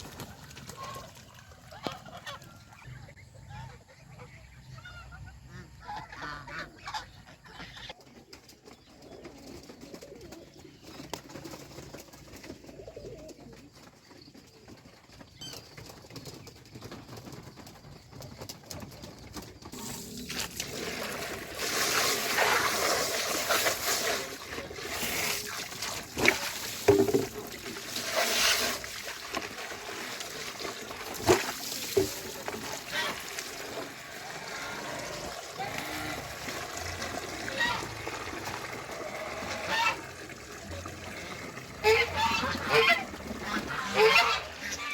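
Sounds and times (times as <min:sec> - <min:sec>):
geese and ducks calling: 0:00.0 - 0:08.0, 0:32.6 - 0:44.9
splashing water: 0:19.7 - 0:44.9.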